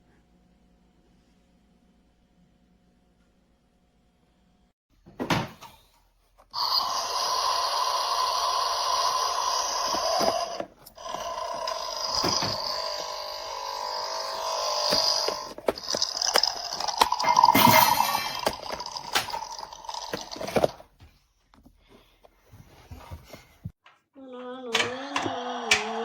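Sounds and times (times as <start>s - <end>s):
hissing rasping toy machine noise: 6.6s - 20.7s.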